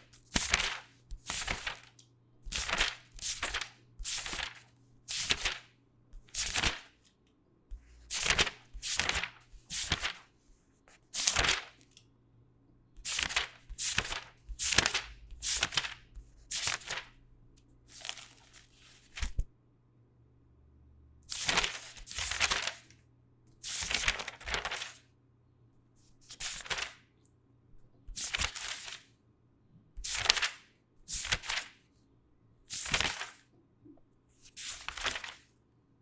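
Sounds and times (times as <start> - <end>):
paper sliding swishes: 7.7 - 10.2, 13.0 - 17.1, 17.9 - 19.4, 31.1 - 31.6, 34.5 - 35.4.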